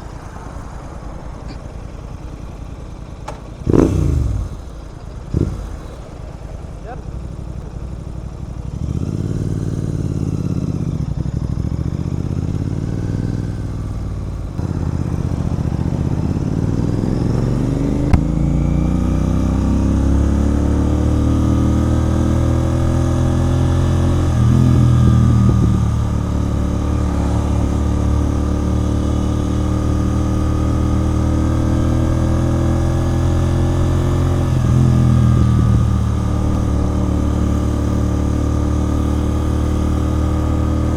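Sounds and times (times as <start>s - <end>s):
motorcycle engine revving: 1.6s - 40.9s.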